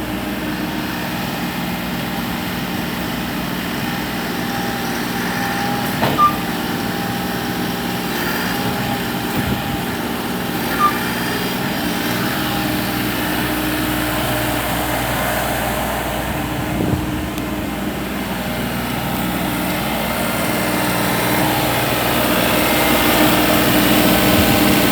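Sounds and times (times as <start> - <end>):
excavator diesel engine running: 0.0 - 24.9
short knocks and clanks: 5.3 - 6.6.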